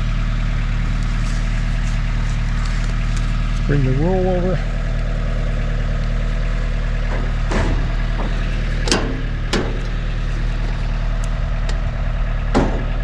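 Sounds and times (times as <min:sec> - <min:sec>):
engine idling: 0:00.0 - 0:13.0
sharp knocks: 0:07.0 - 0:10.0, 0:12.5 - 0:13.0.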